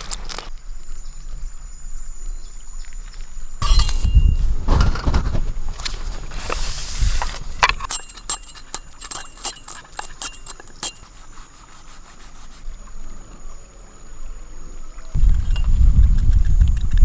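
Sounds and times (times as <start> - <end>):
sharp clicks and clinks: 3.6 - 5.0, 7.6 - 11.3, 15.2 - 17.0
rustling rush of noise: 3.6 - 7.9.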